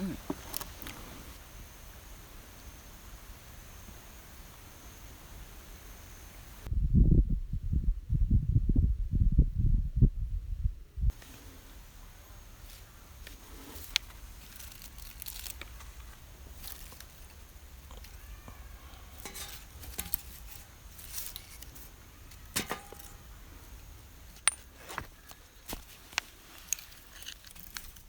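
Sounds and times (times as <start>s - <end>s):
faint low rumble: 6.7s - 11.2s
tableware clinking: 19.2s - 20.6s, 22.6s - 23.2s.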